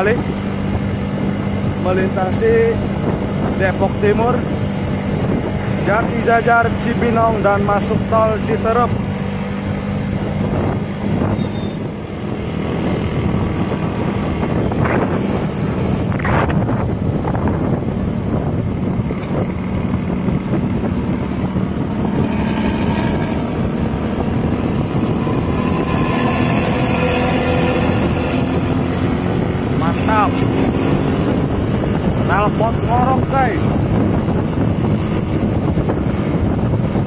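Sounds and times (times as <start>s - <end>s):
bus engine droning: 0.0s - 37.0s.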